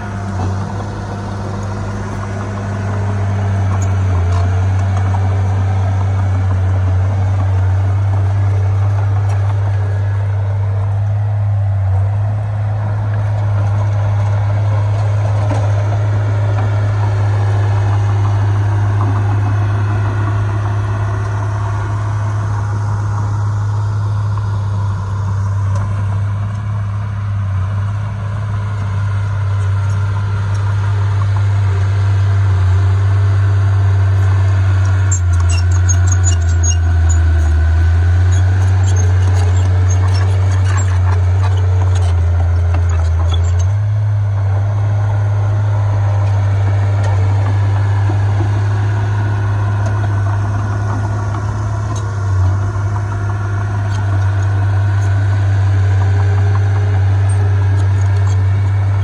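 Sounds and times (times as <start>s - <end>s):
diesel machinery engine drone: 0.0s - 59.0s
high-pitched squeaks and ticks: 34.1s - 43.8s, 48.0s - 59.0s.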